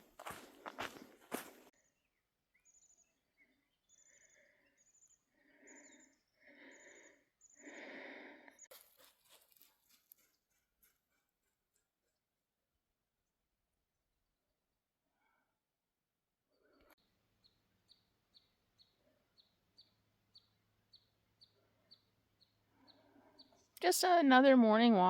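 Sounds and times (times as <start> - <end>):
footsteps on a trail: 0.0 - 1.7.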